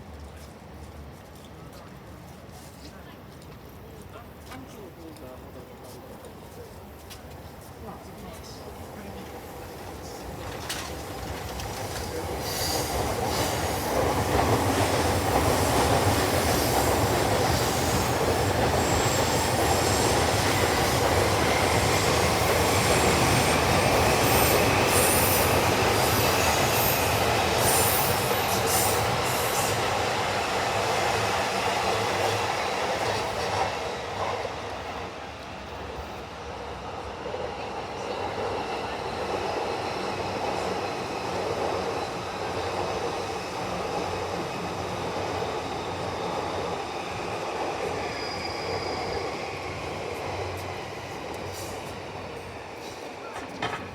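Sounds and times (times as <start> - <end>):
train wheels on rails: 0.0 - 53.9
rail-joint clicks: 10.4 - 17.5, 52.8 - 53.9
wheel squeal: 48.0 - 49.8.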